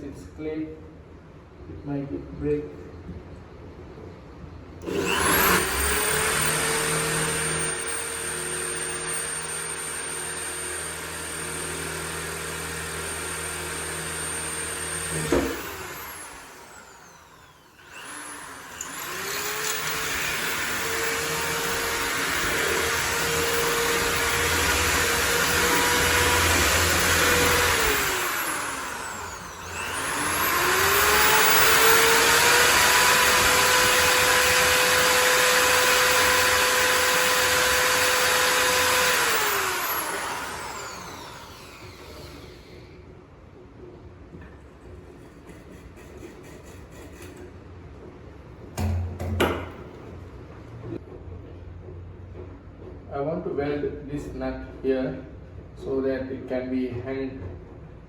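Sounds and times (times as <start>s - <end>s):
electric drill boring into clay: 4.8s - 42.9s.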